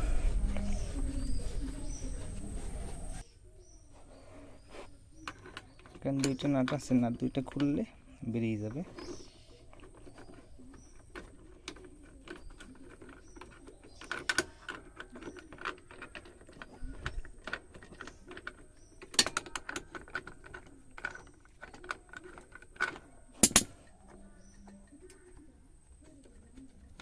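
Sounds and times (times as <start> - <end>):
tool clanking on metal: 5.2 - 23.9.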